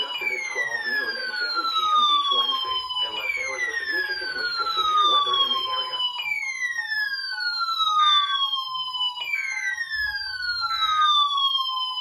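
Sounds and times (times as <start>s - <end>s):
rapid two-tone beeping: 0.0s - 6.4s
falling siren-like alert tone: 0.0s - 12.0s.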